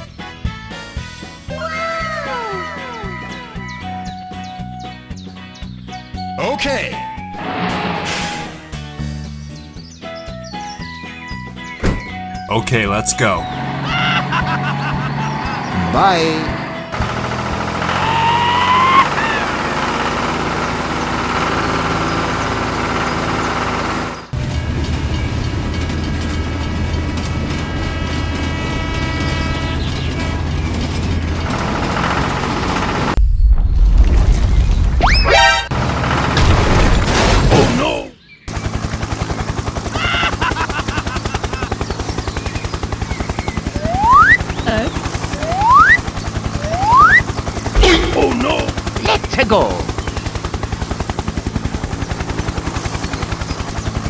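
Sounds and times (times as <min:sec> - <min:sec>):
engine running steadily: 0:07.2 - 0:33.2, 0:35.4 - 0:37.5, 0:38.5 - 0:54.0
rising whistle-like tone: 0:43.7 - 0:44.4, 0:45.4 - 0:47.3.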